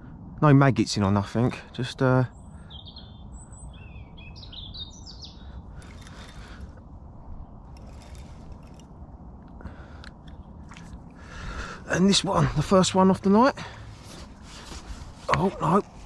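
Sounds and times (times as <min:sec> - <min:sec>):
low outdoor rumble: 0:00.0 - 0:16.0
small birds chirping: 0:01.0 - 0:13.5.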